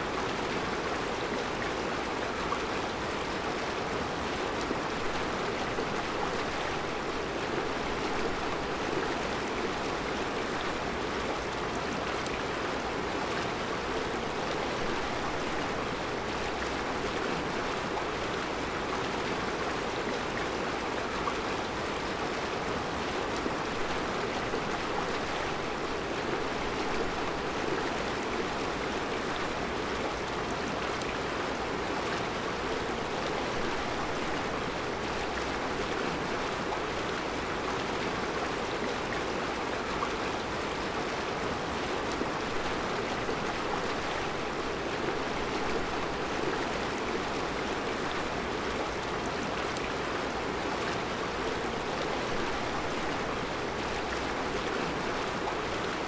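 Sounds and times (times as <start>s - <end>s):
river flowing over rocks: 0.0s - 56.0s.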